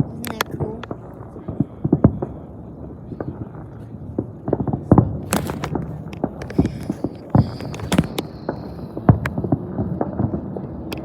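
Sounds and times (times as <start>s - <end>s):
fireworks bangs and pops: 3.1s - 10.4s.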